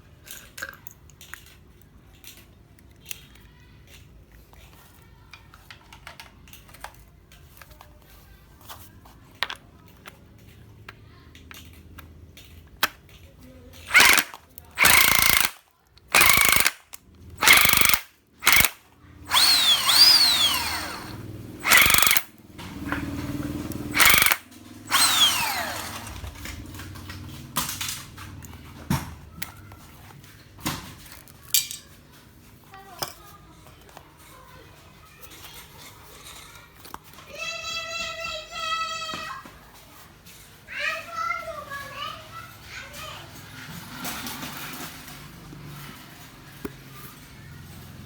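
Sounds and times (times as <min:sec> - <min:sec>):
impact wrench bursts: 0:13.9 - 0:26.6.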